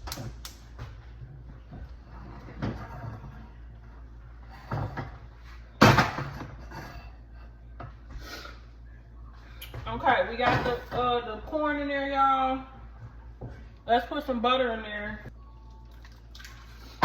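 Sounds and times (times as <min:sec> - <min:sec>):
kitchen knocks and clatters: 0:00.0 - 0:03.6, 0:04.5 - 0:07.2, 0:09.7 - 0:11.3.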